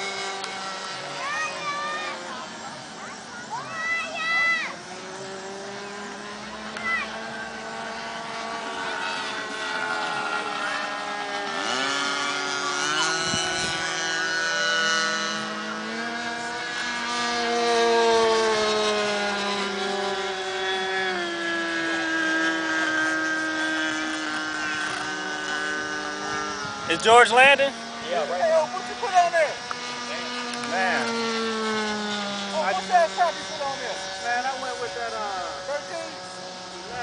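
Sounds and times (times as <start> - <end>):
model airplane engines whining: 0.0 - 37.0.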